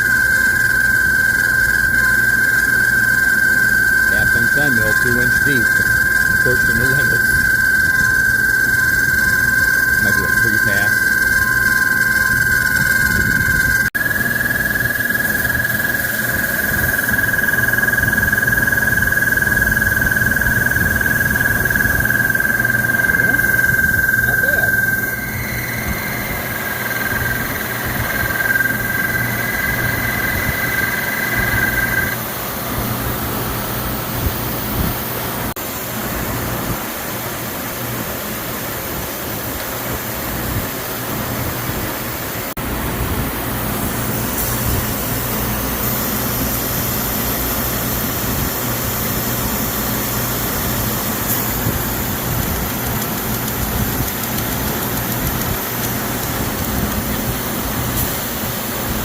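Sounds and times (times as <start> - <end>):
milling machine cutting: 0.0 - 32.2
high two-tone whine: 0.0 - 35.6.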